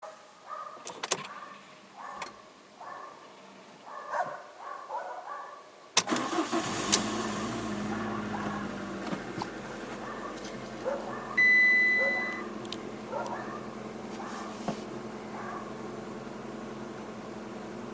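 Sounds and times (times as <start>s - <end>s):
car engine cranking and idling: 6.0s - 17.9s.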